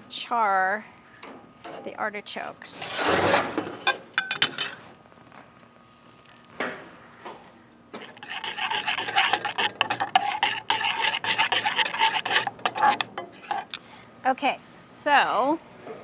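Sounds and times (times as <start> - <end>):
food sizzling and crackling: 8.0 - 13.8.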